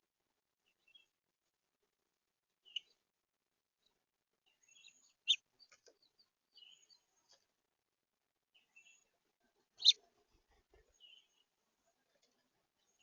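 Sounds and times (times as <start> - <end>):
finches chirping: 4.5 - 7.1, 9.7 - 10.0, 10.9 - 11.5.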